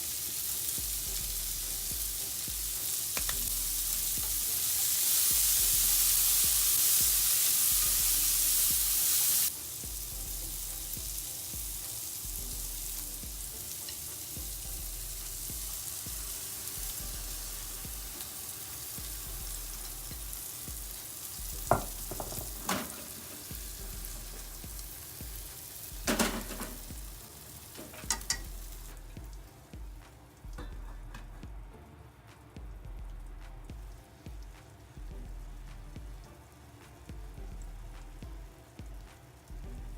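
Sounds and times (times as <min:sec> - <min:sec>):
batter sizzling in a pan: 0:00.0 - 0:39.9.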